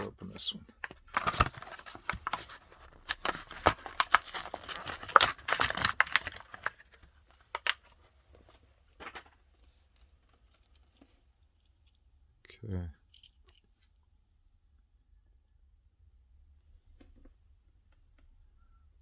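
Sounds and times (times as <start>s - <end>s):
blister packaging ripping and crinkling: 1.1s - 7.8s.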